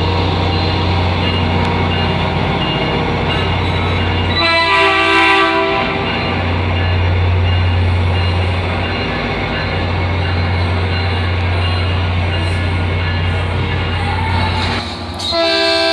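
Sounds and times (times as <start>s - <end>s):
train engine drone: 0.0s - 15.9s
train horn blast: 4.3s - 6.2s, 15.2s - 15.9s.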